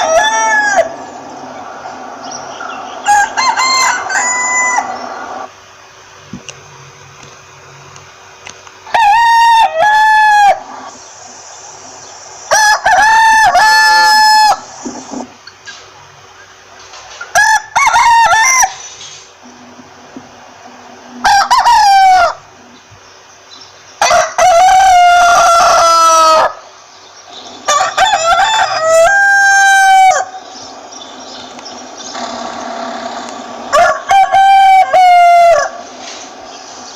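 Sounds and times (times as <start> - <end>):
rooster crowing: 0.0 - 5.5, 8.9 - 11.0, 12.5 - 14.7, 17.3 - 18.8, 21.1 - 22.5, 24.0 - 26.6, 27.6 - 30.6, 32.1 - 36.0.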